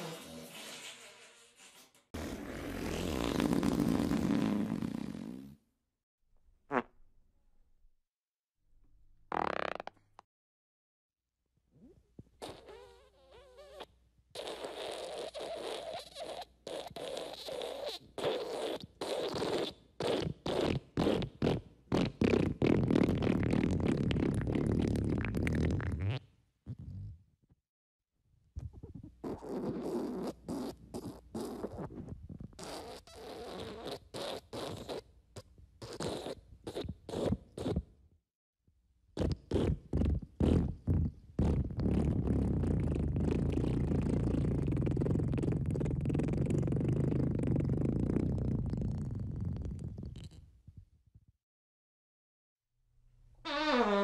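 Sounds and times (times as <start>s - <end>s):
fart sound effects: 0.0s - 1.4s, 2.2s - 5.6s, 6.7s - 7.0s, 9.3s - 10.0s, 12.4s - 27.2s, 28.8s - 35.1s, 39.2s - 50.4s, 53.5s - 54.0s.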